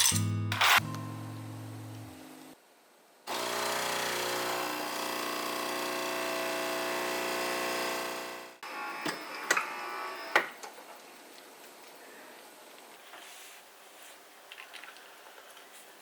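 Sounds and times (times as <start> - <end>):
music: 0.0 - 2.6
small electric motor humming: 3.3 - 8.7.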